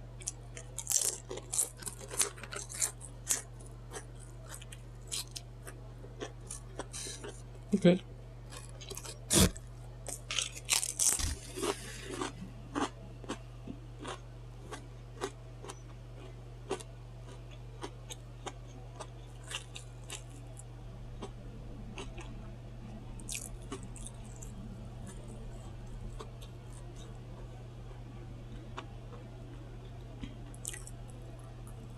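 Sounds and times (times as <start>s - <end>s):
low hum: 0.0s - 31.9s
crunching potato chips: 0.2s - 7.4s, 8.5s - 13.4s, 14.0s - 20.6s, 23.2s - 24.5s, 30.2s - 31.2s.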